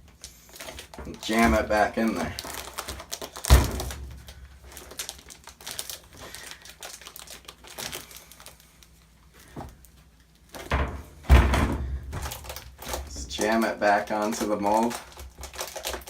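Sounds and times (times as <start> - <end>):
light crinkling: 0.0 - 10.6.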